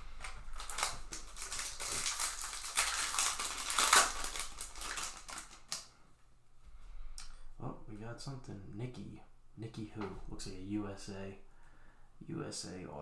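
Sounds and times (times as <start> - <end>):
foil wrapper crinkling and tearing: 0.0 - 5.9.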